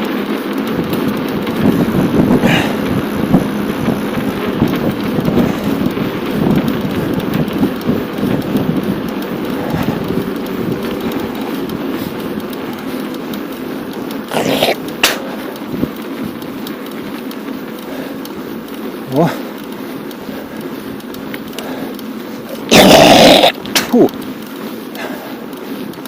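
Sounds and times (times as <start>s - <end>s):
bicycle tyres on pavement: 0.0s - 26.0s
wind on microphone: 0.7s - 12.9s.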